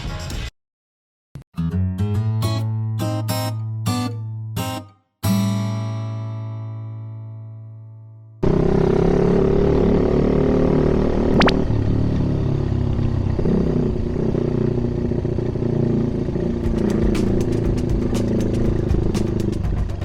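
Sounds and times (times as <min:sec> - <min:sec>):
small motorbike engine running: 0:08.4 - 0:20.0
irregular sharp ticks: 0:16.7 - 0:20.0.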